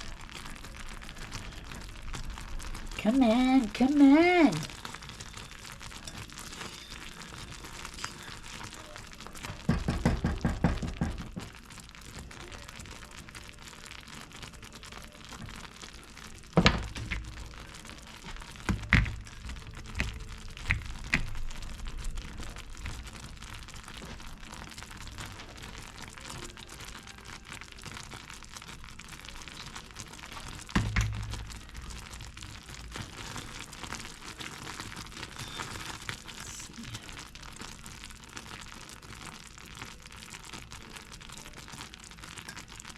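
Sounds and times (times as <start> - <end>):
toffee bubbling in a pan: 0.0 - 42.9.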